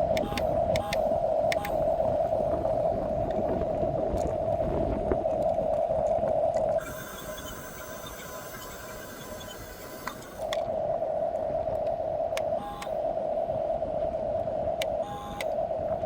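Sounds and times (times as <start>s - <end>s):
quiet electrical hum: 0.0s - 16.0s
toy bulldozer motors whining: 0.2s - 1.8s, 6.8s - 10.6s, 12.6s - 13.0s, 15.0s - 15.5s.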